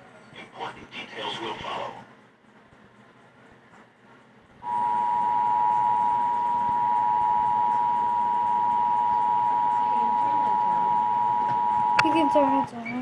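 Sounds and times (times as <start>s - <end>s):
two-tone alert signal: 4.6s - 12.4s.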